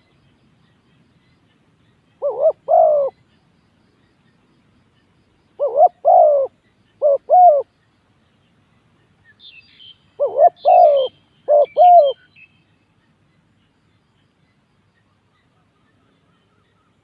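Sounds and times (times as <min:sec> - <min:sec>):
small bird chirping: 0:00.0 - 0:17.0
dove cooing: 0:02.2 - 0:03.2, 0:05.6 - 0:07.7, 0:10.2 - 0:12.3.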